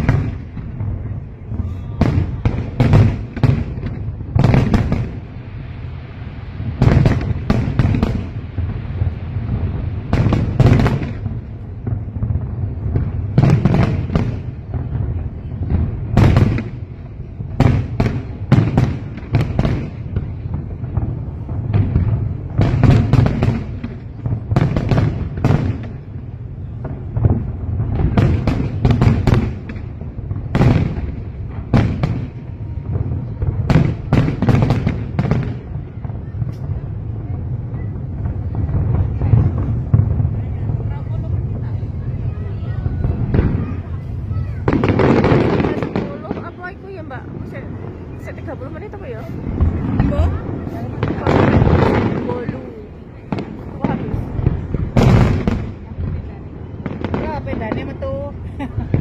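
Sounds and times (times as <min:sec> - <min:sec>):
deep rumble: 0:35.0 - 0:59.0.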